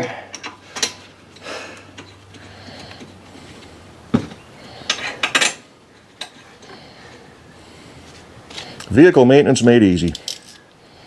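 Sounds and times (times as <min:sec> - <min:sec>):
metal tools clinking: 0:04.8 - 0:06.7, 0:10.0 - 0:10.7.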